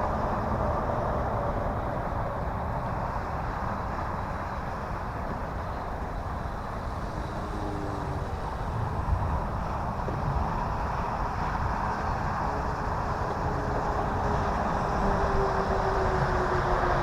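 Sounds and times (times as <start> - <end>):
model plane motor droning: 6.3 - 10.1.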